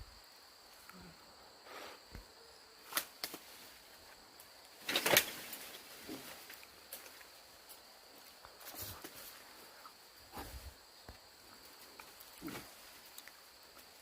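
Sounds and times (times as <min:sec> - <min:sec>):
leaves and vines rustling: 0:02.8 - 0:14.0.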